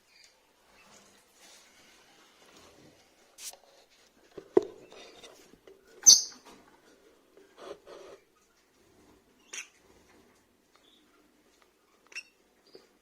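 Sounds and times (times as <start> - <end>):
lovebirds squeaky chirps: 6.0 - 6.4, 12.1 - 12.8.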